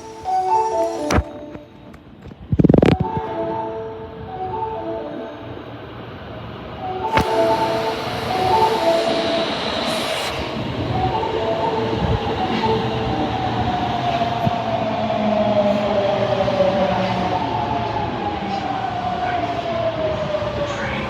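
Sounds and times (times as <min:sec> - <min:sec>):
air hiss: 0:00.0 - 0:01.3, 0:07.1 - 0:11.6
train motor whine: 0:00.0 - 0:01.9, 0:07.1 - 0:12.3
train door chime: 0:00.0 - 0:02.4, 0:06.8 - 0:13.8.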